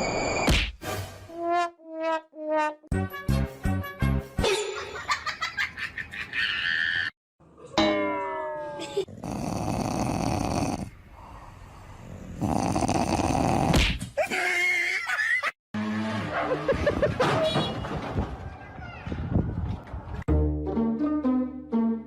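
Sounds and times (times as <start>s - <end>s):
dog snoring: 9.1s - 11.0s, 11.8s - 13.8s.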